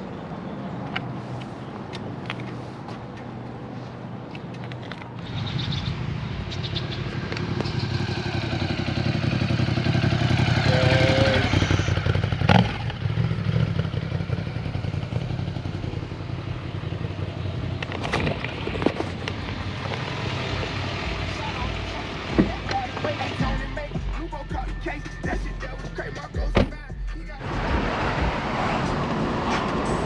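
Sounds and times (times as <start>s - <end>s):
motorcycle engine running: 5.3s - 25.6s.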